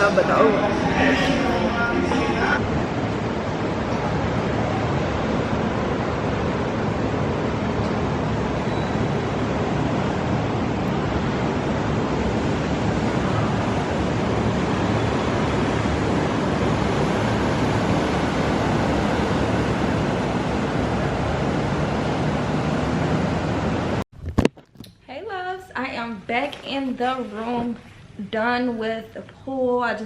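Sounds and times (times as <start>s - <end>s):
steady rushing noise: 0.0s - 24.0s.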